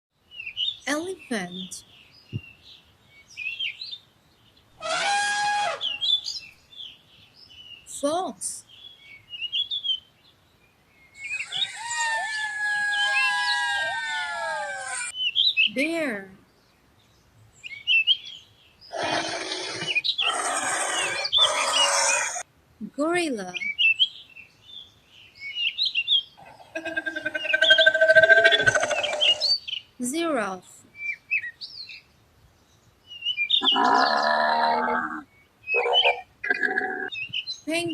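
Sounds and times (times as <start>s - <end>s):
birds chirping: 0.2s - 22.5s, 23.1s - 37.9s
loud buzzing call: 4.8s - 5.9s
elephant trumpeting: 4.8s - 6.0s, 11.5s - 15.1s, 18.9s - 22.4s, 26.4s - 29.5s.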